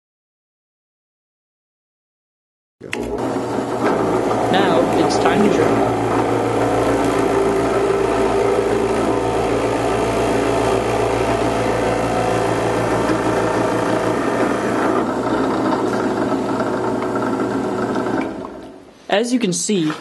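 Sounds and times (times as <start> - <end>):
drill press motor hum: 2.8 - 18.9
drill bit boring into wood: 3.0 - 18.8.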